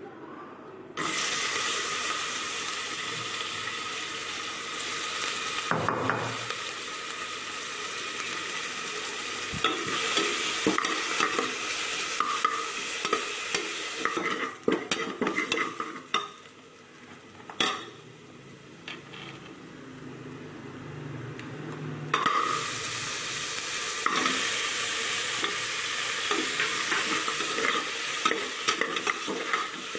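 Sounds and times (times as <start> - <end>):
food sizzling in hot oil: 1.0 - 19.1, 22.1 - 29.9
spoon stirring and scraping: 12.2 - 16.4, 26.3 - 29.9.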